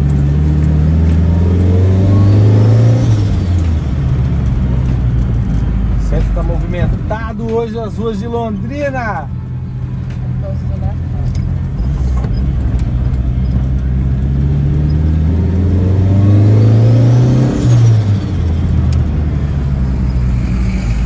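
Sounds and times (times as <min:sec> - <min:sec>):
pickup engine pulling under throttle: 0:00.0 - 0:07.1, 0:11.5 - 0:21.0.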